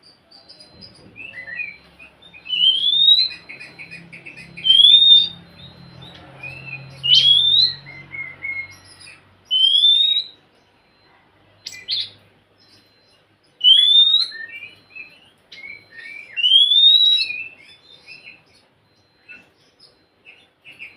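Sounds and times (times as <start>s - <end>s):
bird chattering notes: 0.0s - 11.0s, 11.6s - 20.9s
bird whistling song: 0.3s - 11.0s, 11.6s - 20.9s.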